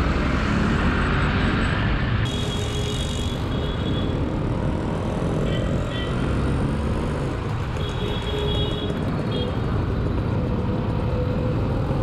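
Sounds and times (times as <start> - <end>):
wind and road noise: 0.0 - 12.0.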